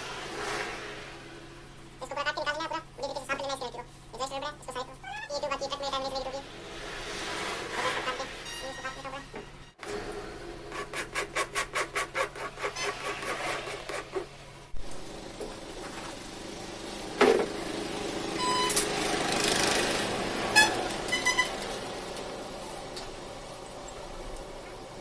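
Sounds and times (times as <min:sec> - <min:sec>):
rasp scraping rubber: 0:10.7 - 0:14.4.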